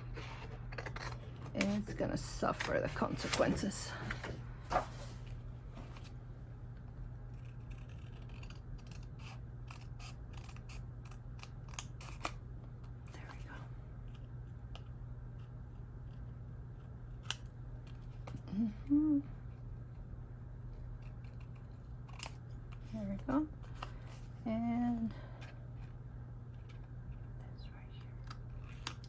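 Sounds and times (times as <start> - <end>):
faint low hum: 0.0 - 29.0
scissors cutting paper: 0.1 - 3.7, 7.2 - 12.4, 20.7 - 23.8, 28.2 - 29.0.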